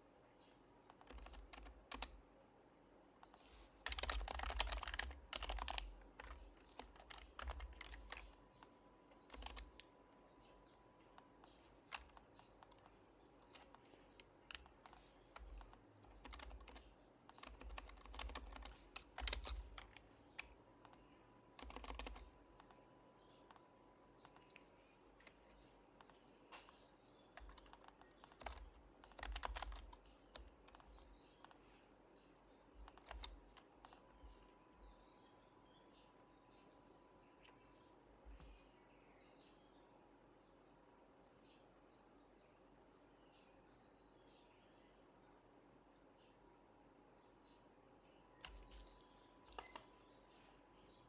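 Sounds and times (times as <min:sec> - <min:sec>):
keyboard typing: 0:00.9 - 0:02.2, 0:03.2 - 0:10.0, 0:11.1 - 0:22.8, 0:23.4 - 0:31.6, 0:32.8 - 0:34.5, 0:48.4 - 0:50.0.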